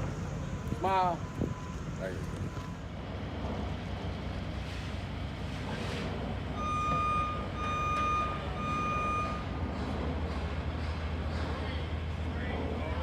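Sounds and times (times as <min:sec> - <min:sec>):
low engine rumble: 0:00.0 - 0:13.0
reversing alarm beeps: 0:01.0 - 0:02.9, 0:06.5 - 0:09.6.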